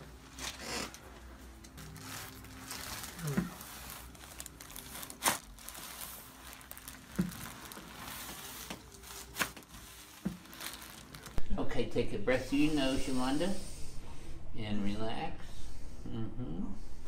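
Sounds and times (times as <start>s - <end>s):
rustling on treatment table: 0.2s - 11.4s.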